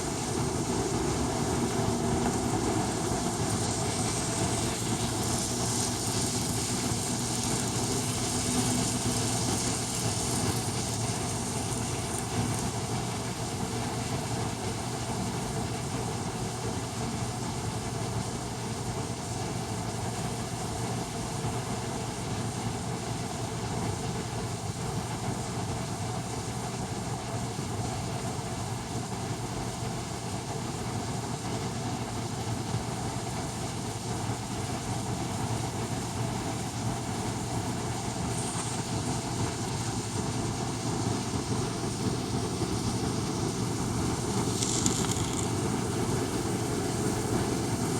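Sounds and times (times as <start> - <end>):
model train running on track: 1.7 - 13.7, 36.3 - 47.9.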